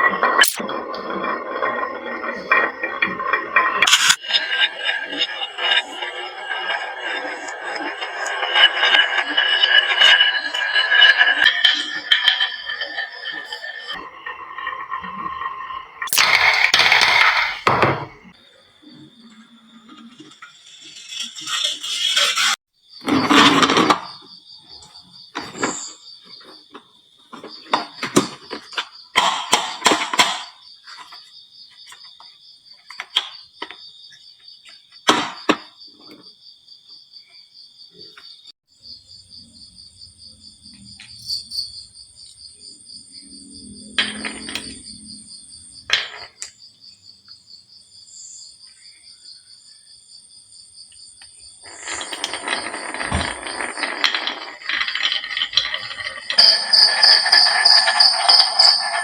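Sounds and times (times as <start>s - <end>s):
marbles clicking on wooden run: 0.0s - 18.2s, 51.6s - 59.0s
marbles rattling down together: 5.6s - 18.0s, 51.7s - 59.0s.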